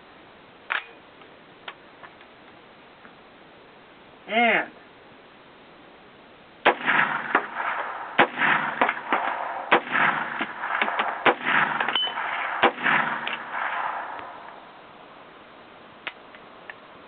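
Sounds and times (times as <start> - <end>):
rifle shots: 6.6 - 14.9
rolling echo: 6.7 - 15.2.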